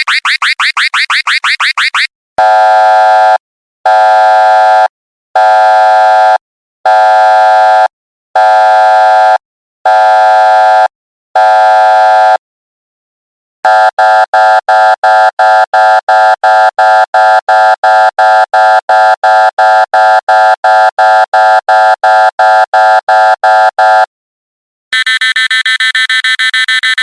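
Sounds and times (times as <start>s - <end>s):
buzzing alarm tone: 0.0s - 2.1s, 25.0s - 27.0s
quick short beeps: 0.0s - 2.1s
rising electronic chirp: 0.0s - 2.1s.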